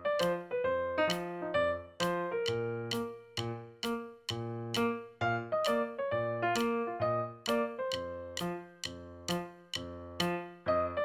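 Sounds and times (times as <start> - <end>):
light keyboard melody: 0.0 - 11.0.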